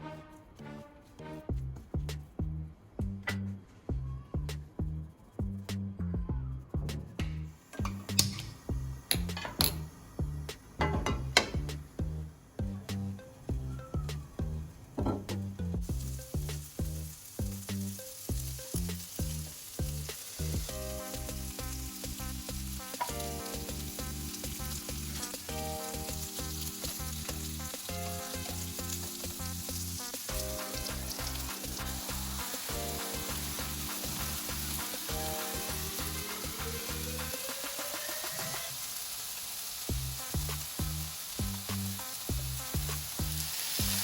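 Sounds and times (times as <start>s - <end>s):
background music with a beat: 0.0s - 9.4s, 10.2s - 38.8s, 39.9s - 44.0s
food sizzling in a pan: 7.6s - 12.2s, 13.2s - 44.0s.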